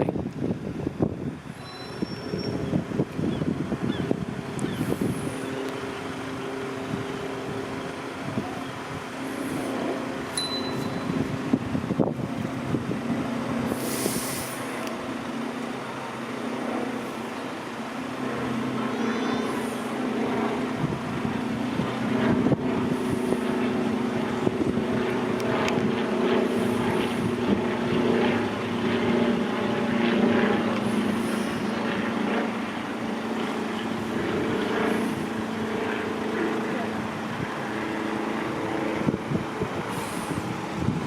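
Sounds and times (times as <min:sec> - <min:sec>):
diesel train engine running: 0:04.2 - 0:16.3.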